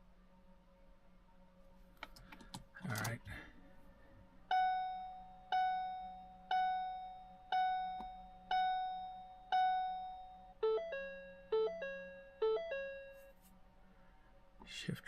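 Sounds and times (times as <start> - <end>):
car warning chime dings: 4.5 - 13.2.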